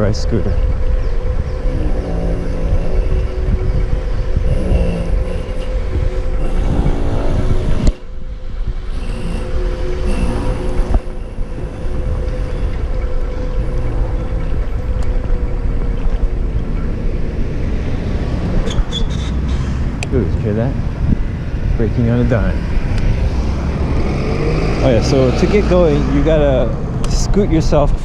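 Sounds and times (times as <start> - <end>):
electric scooter motor whine: 0.0 - 28.0
wheels and wind rumble: 0.0 - 28.0.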